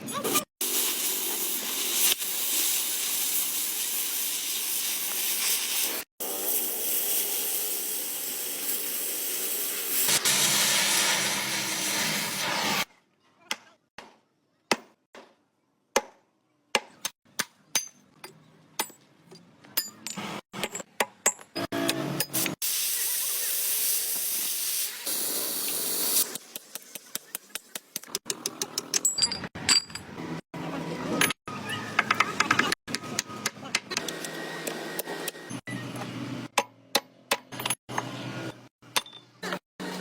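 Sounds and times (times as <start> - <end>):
welding arc crackling and hissing: 0.6 - 12.9, 22.4 - 27.9.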